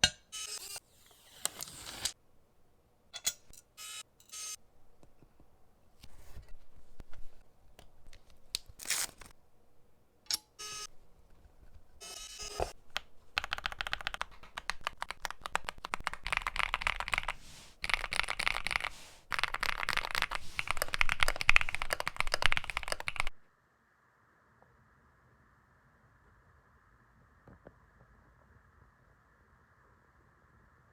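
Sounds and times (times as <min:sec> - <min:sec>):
keyboard clicks: 0:12.9 - 0:23.4
fast typing on keyboard: 0:13.0 - 0:23.4.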